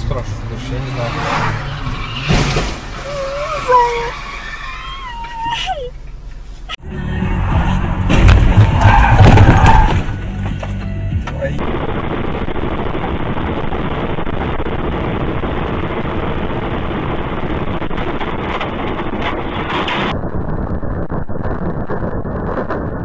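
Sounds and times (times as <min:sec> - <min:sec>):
car road and engine noise: 0:00.0 - 0:20.2.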